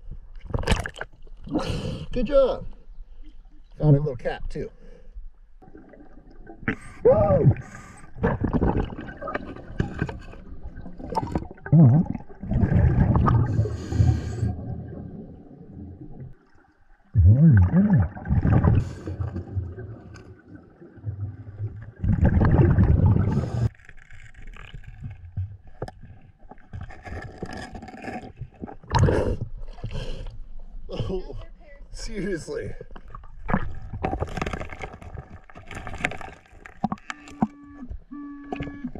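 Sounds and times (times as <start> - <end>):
rushing water underwater: 0.0 - 2.0, 5.6 - 30.9, 32.8 - 38.9
gurgling bubbles: 5.6 - 23.7, 27.8 - 30.2.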